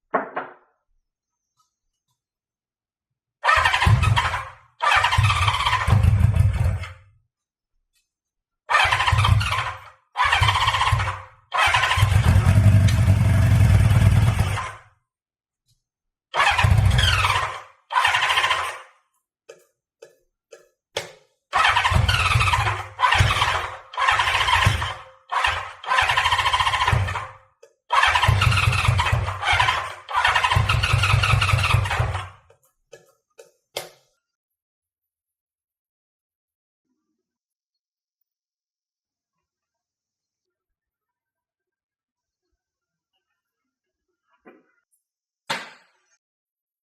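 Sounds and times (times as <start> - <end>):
motorcycle engine cranking on starter: 3.5 - 6.9, 8.7 - 14.8, 16.4 - 18.9, 21.6 - 32.4.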